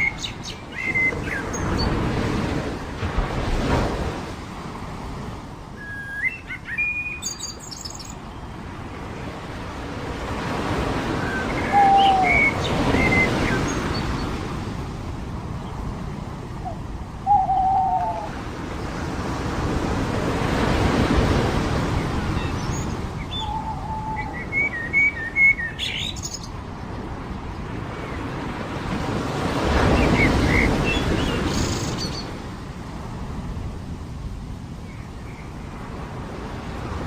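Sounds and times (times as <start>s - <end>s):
surf washing on beach: 0.0s - 37.0s
low bird calls: 11.1s - 14.4s, 16.6s - 18.4s, 22.4s - 26.4s.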